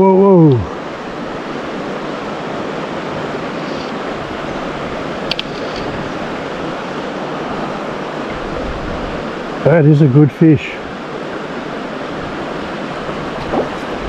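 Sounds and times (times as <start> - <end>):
river water rushing: 0.0 - 14.0
brief click: 5.3 - 5.9.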